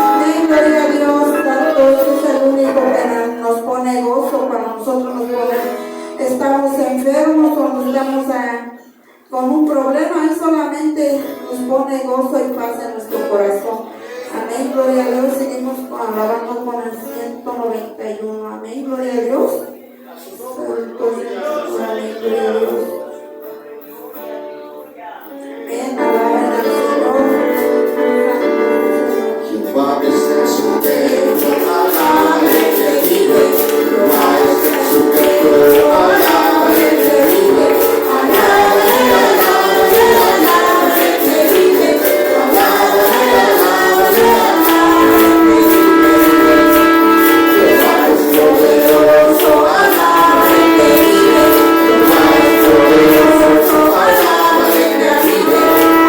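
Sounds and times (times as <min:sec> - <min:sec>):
group singing a praise song: 0:00.0 - 0:04.0, 0:20.4 - 0:23.0, 0:29.3 - 0:56.0
instrumental accompaniment: 0:26.0 - 0:56.0
steady percussion beat: 0:30.6 - 0:56.0.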